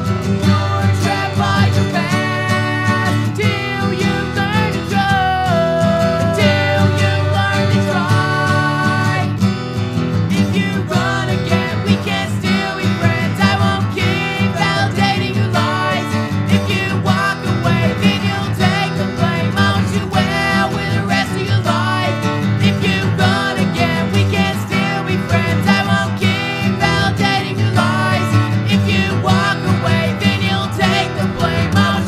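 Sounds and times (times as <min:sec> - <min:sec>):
rock band instrumental with guitars: 0:06.4 - 0:32.0.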